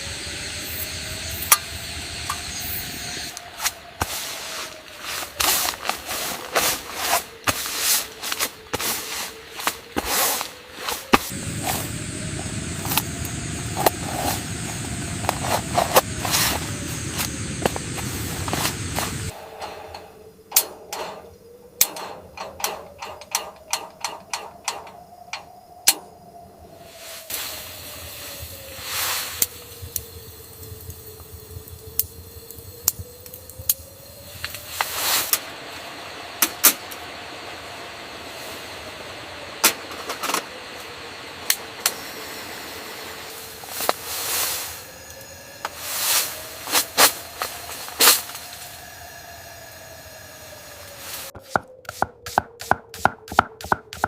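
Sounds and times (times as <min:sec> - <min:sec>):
wind gusting against tent: 0:00.1 - 0:20.2.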